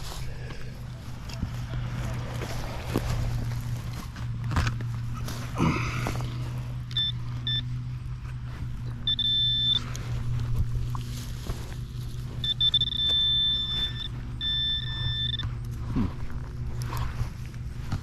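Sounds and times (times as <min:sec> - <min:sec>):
low hum: 0:00.0 - 0:18.0
metal detector beeping: 0:06.9 - 0:07.9, 0:08.8 - 0:10.3, 0:12.2 - 0:15.7.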